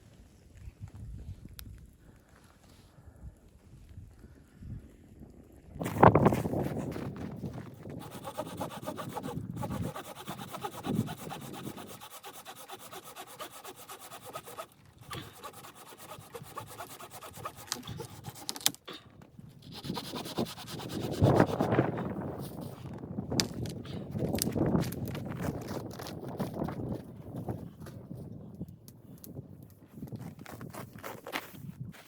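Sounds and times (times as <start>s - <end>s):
saw cutting wood: 7.9s - 18.8s, 19.6s - 21.9s.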